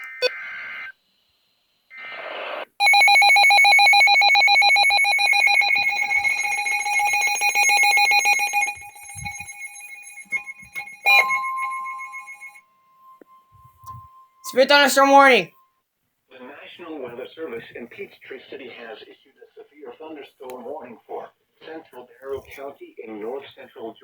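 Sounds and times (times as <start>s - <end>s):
rapid pulsing alarm beeps: 2.8s - 12.6s
data tone bursts: 2.8s - 15.4s
steady warning alarm tone: 2.8s - 15.4s.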